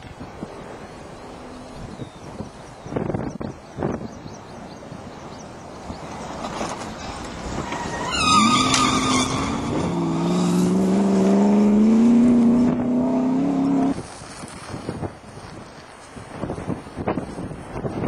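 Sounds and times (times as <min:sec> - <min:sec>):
brief high squeal: 0:07.6 - 0:09.8.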